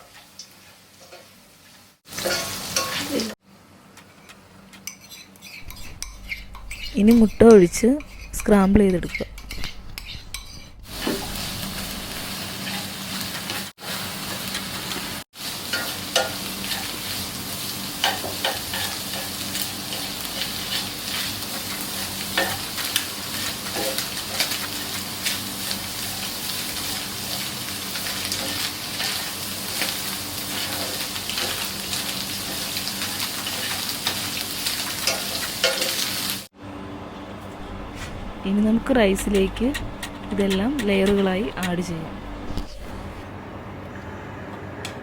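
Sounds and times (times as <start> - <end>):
eggs sizzling in a pan: 0.0 - 3.4, 4.2 - 36.5
spatula scraping a pan: 4.0 - 15.0, 18.0 - 27.4, 28.0 - 36.4.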